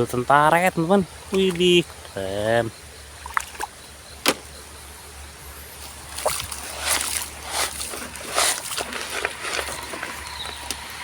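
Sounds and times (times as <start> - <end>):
water splashing and sloshing: 3.1 - 4.4, 5.8 - 10.3.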